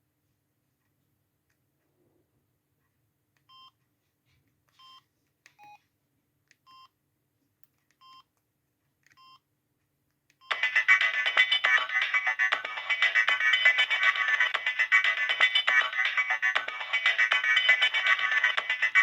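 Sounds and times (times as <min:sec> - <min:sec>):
ringtone melody: 0:10.5 - 0:19.0.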